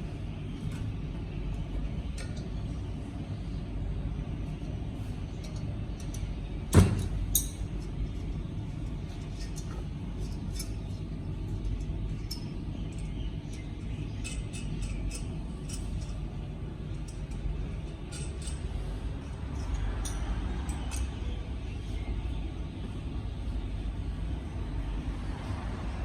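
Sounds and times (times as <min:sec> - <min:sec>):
steady low rumble: 0:00.0 - 0:26.0
metal tools clinking: 0:16.9 - 0:21.2.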